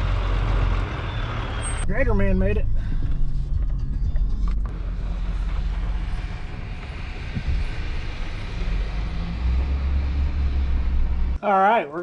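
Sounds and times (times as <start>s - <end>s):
diesel engine running: 0.0s - 11.4s
rushing noise: 4.7s - 11.4s.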